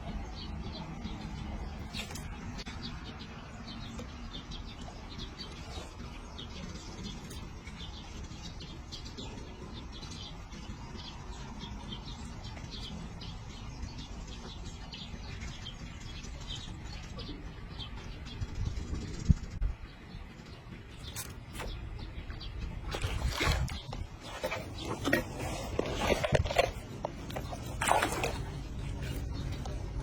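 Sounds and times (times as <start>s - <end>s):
small birds chirping: 0.0s - 30.0s
steady low rumble: 10.4s - 24.3s.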